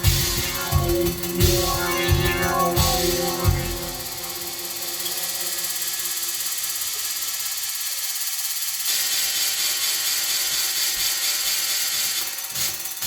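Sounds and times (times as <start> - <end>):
short drum-like hits: 0.0 - 6.3
electronic noise music: 0.0 - 7.0
ratchet-like clicking pulse: 0.0 - 10.0.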